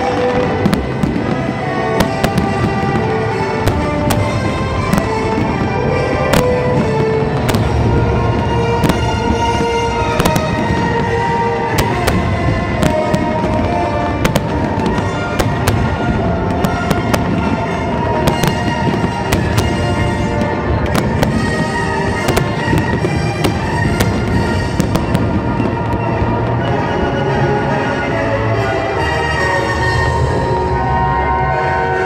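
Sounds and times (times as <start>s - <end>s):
fireworks bursting: 0.0s - 28.2s
music with sustained notes: 0.0s - 32.0s.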